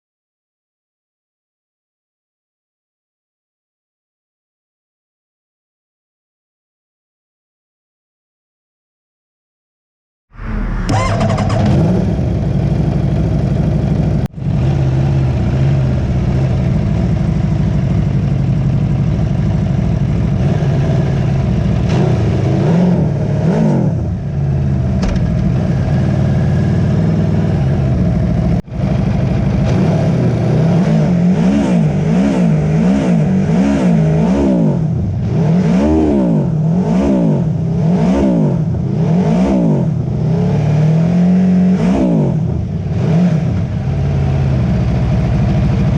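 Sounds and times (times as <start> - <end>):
motorcycle engine revving: 10.4 - 45.9.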